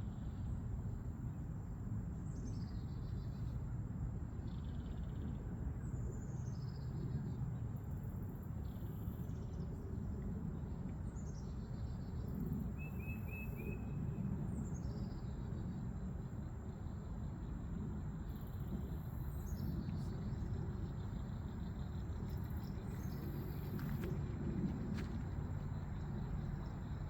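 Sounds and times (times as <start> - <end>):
low outdoor rumble: 13.8 - 27.0.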